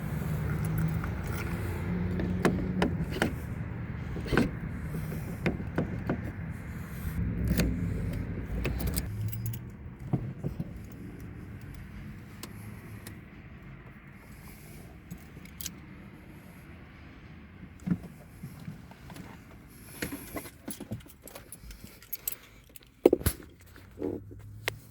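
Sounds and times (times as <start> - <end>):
keys clicking and jangling: 0.4 - 5.4, 7.4 - 10.1, 15.2 - 15.8, 20.5 - 23.8.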